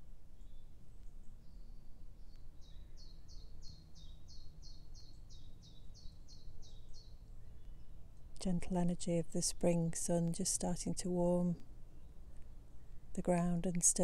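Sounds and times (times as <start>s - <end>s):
low outdoor rumble: 7.4s - 14.0s.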